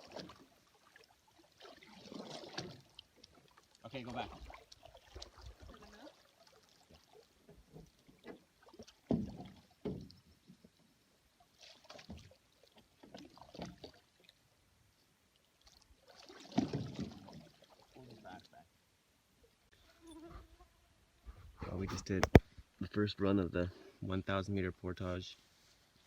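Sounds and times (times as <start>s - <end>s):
paddle splashing in water: 0.0s - 10.6s, 11.4s - 14.3s, 15.6s - 18.5s.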